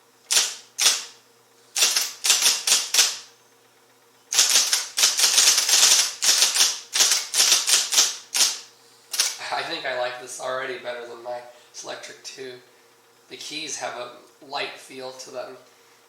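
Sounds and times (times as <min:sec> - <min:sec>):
electric typewriter keystrokes: 0:00.3 - 0:01.1, 0:01.8 - 0:03.3, 0:04.3 - 0:09.4.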